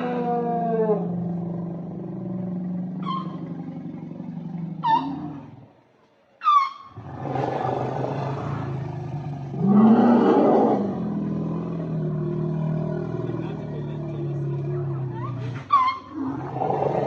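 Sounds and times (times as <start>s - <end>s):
elephant low rumbling roar: 0.0s - 5.7s, 7.0s - 17.0s
elephant trumpeting: 15.2s - 17.0s.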